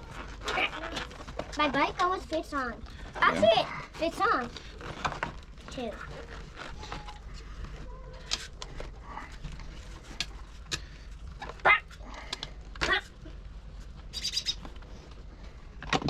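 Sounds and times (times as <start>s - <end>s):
dog barking: 11.6s - 11.9s
dog yipping: 11.6s - 11.9s.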